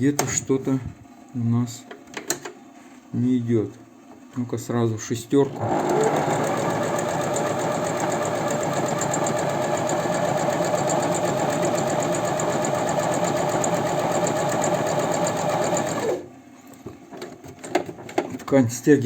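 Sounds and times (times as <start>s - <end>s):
electric sewing machine running: 5.5s - 16.3s.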